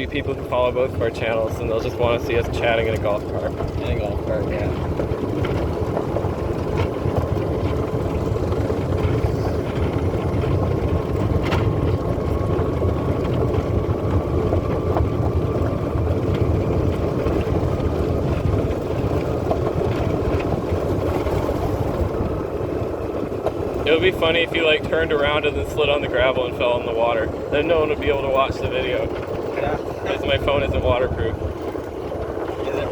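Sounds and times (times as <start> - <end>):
golf cart rumbling: 0.0 - 32.9
wind on microphone: 0.0 - 32.9.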